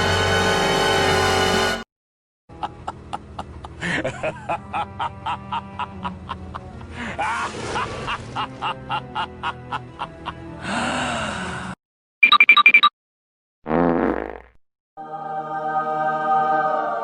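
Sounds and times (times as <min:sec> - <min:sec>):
evil laugh: 0:02.5 - 0:10.4.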